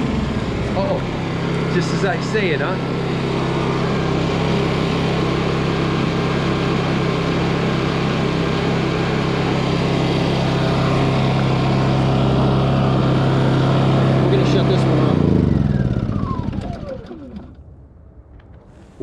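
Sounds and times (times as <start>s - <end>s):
generator engine humming: 0.0s - 19.0s.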